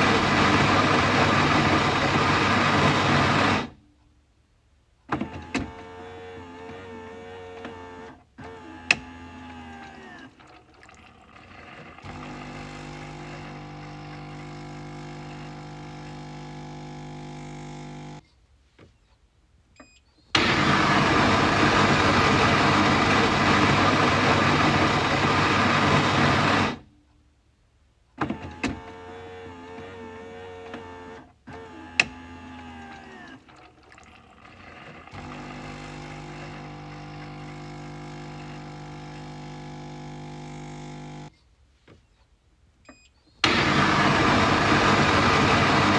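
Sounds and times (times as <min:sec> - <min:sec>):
coffee machine motor hum: 0:00.0 - 0:03.8, 0:11.0 - 0:18.2, 0:20.4 - 0:26.8, 0:28.9 - 0:41.3, 0:43.4 - 0:45.9.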